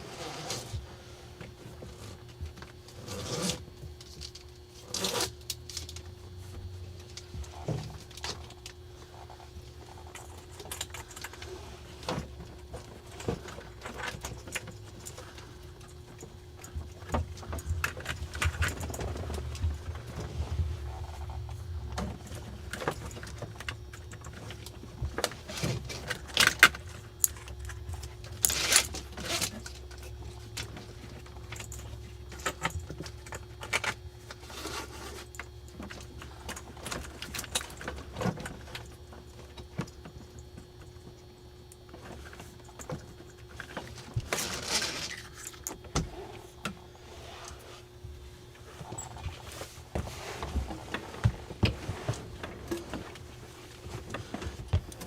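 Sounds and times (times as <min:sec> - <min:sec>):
faint steady hum: 0:00.0 - 0:55.0
handling clicks and rattles: 0:07.0 - 0:34.4.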